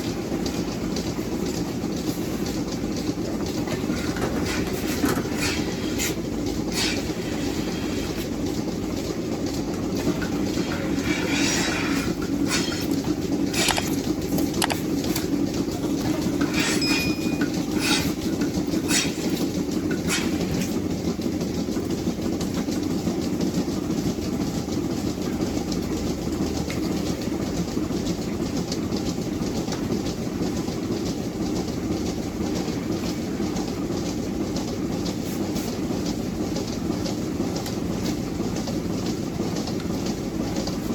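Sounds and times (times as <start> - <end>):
machinery rumbling: 0.0 - 21.2
sharp clicks or knocks: 13.6 - 14.9.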